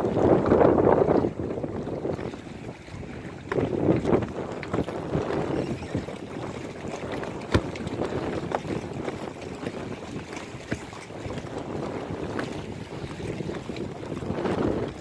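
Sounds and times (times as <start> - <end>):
sea water: 0.0 - 15.0
wind on microphone: 0.0 - 15.0
plastic floats knocking: 7.2 - 9.1.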